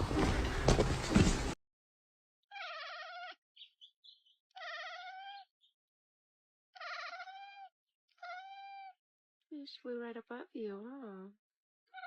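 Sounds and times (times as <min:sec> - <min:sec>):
cat meowing: 0:02.5 - 0:03.4, 0:04.6 - 0:05.5, 0:06.8 - 0:09.0
cat chirping: 0:02.5 - 0:05.5, 0:06.8 - 0:09.0.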